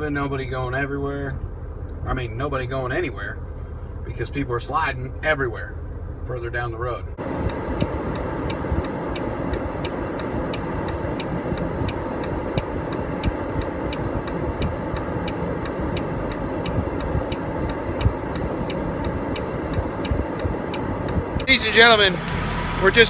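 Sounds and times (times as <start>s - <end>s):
truck engine and road rumble: 0.0s - 23.0s.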